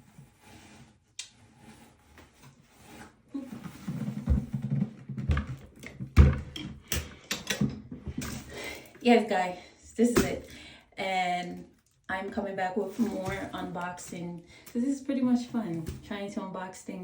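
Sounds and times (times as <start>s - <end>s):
mixer parts knocking and thumping: 3.5s - 8.7s, 10.0s - 10.5s, 13.0s - 14.3s.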